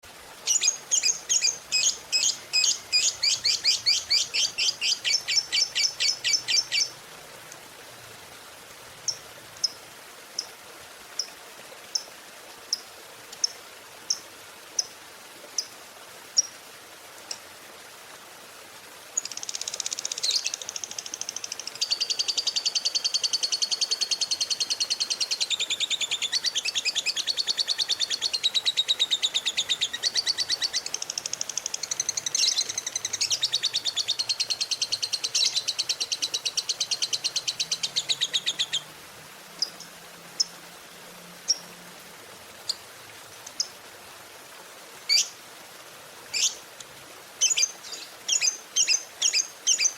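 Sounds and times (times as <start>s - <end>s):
lovebird chirping: 0.4s - 6.9s, 19.2s - 38.8s, 45.1s - 45.3s, 46.3s - 46.6s, 47.4s - 49.9s
lovebird chattering trill: 0.5s - 6.9s.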